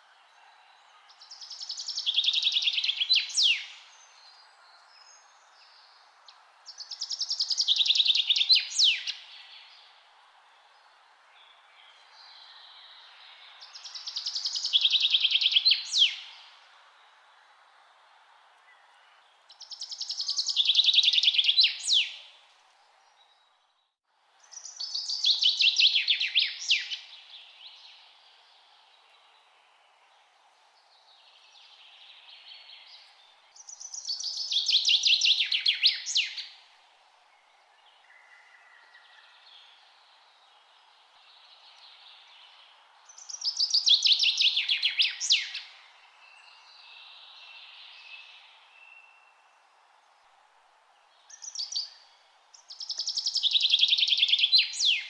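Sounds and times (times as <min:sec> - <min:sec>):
faint birdsong: 0:00.0 - 0:55.0
steady low hiss: 0:00.0 - 0:55.0
songbird singing loudly: 0:00.4 - 0:06.0, 0:06.7 - 0:09.9, 0:11.4 - 0:16.6, 0:19.5 - 0:22.3, 0:24.5 - 0:28.1, 0:31.5 - 0:36.6, 0:41.4 - 0:49.5, 0:51.2 - 0:55.0.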